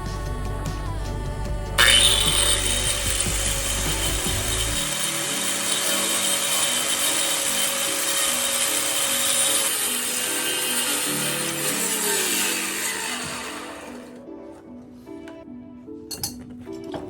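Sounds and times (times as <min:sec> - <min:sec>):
background music: 0:00.0 - 0:17.0
electric power tool running: 0:01.8 - 0:14.2.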